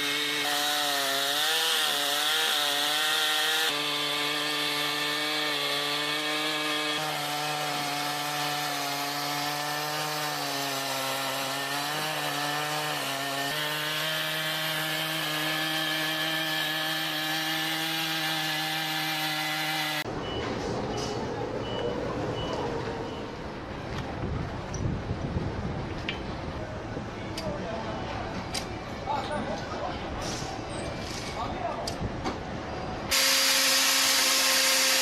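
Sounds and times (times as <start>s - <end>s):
chainsaw cutting wood: 0.0s - 20.1s, 33.1s - 35.0s.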